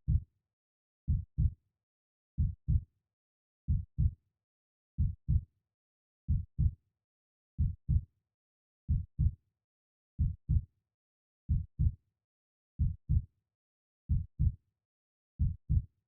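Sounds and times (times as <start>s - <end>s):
heartbeat thumps: 5.0s - 5.4s, 7.6s - 8.0s, 10.2s - 10.6s, 12.8s - 13.2s, 14.1s - 14.5s, 15.4s - 15.8s.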